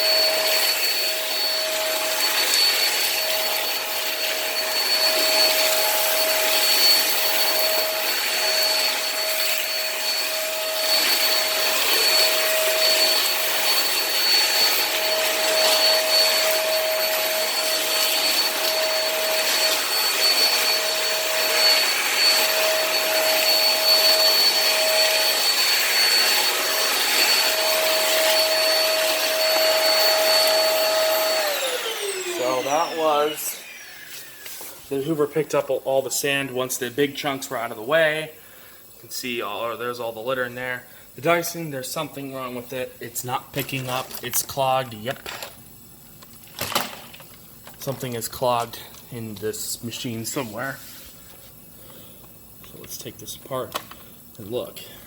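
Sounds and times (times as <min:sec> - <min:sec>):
vacuum sucking up litter: 0:00.0 - 0:36.4
stick vacuum whining: 0:00.0 - 0:38.2, 0:41.2 - 0:55.0.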